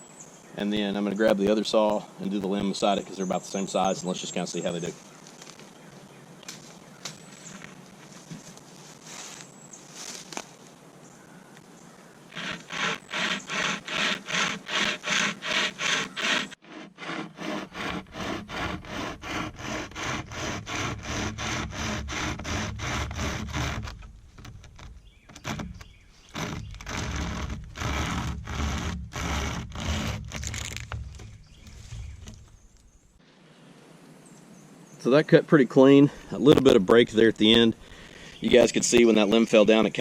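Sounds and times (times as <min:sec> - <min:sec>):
pocket chainsaw rasping through wood: 0:12.3 - 0:33.0.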